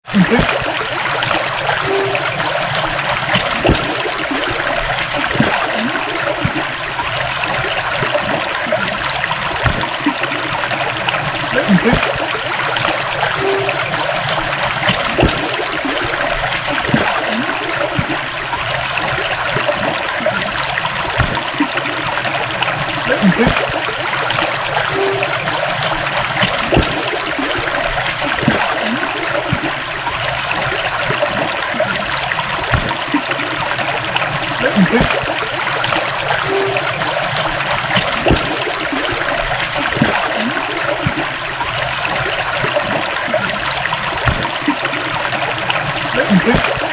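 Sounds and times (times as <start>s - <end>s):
stream babbling over stones: 0.0s - 46.9s.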